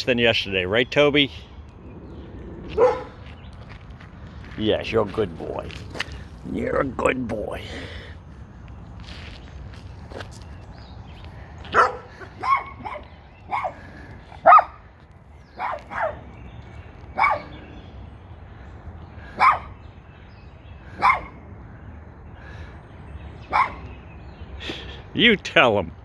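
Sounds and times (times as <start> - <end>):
dog barking: 2.7 - 3.2, 11.7 - 13.8, 14.4 - 14.8, 15.6 - 16.3, 17.1 - 17.6, 19.4 - 19.8, 21.0 - 21.4, 23.5 - 23.9.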